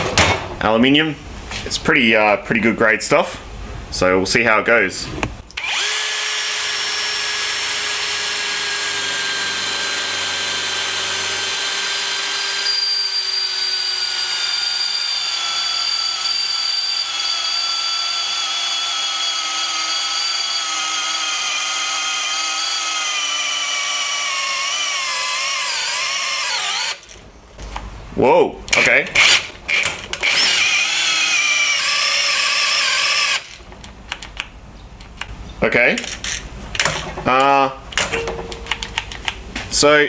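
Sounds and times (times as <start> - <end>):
drill motor whine: 5.6 - 27.1, 29.2 - 33.5.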